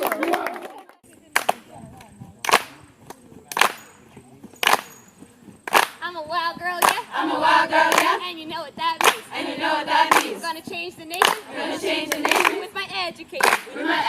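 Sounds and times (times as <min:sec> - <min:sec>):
group clapping in a steady beat: 0:00.0 - 0:04.0, 0:04.6 - 0:05.0, 0:05.6 - 0:06.0, 0:06.7 - 0:14.0
group of voices singing: 0:06.9 - 0:14.0.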